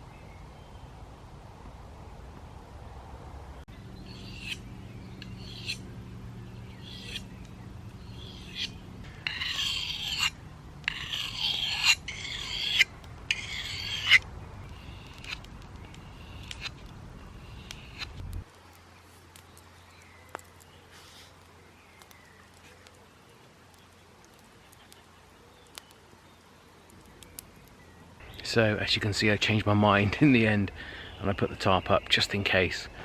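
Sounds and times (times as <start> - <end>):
songbird singing: 0.0 - 2.3, 3.4 - 33.0.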